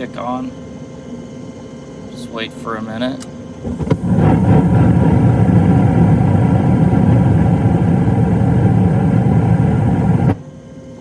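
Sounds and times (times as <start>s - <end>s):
gas burners lighting and rushing: 3.2s - 10.5s.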